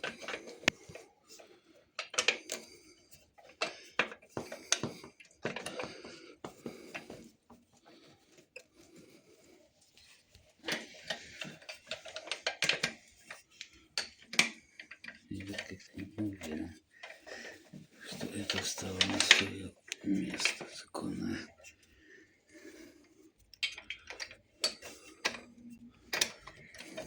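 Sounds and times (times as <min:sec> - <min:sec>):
metal tools clicking and clattering: 0:10.6 - 0:20.8.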